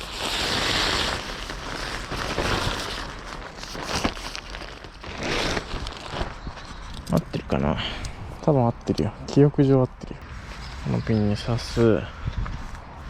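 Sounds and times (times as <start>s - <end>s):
ground sheet rustling: 0.0s - 6.9s.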